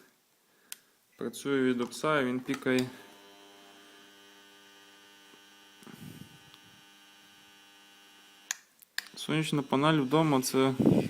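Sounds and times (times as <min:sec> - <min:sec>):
electrical hum: 0:02.2 - 0:08.5.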